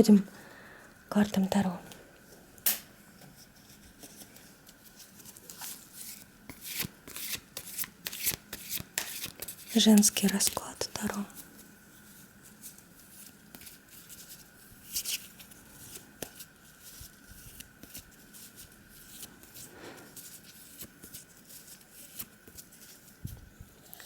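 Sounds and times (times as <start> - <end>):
cards shuffling: 4.0 - 10.6.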